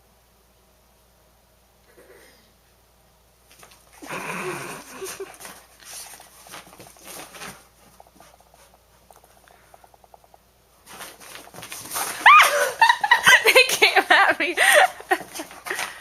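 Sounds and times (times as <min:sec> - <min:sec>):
animals scuffling and thumping: 0:04.9 - 0:16.0
light paw patters: 0:05.1 - 0:12.3.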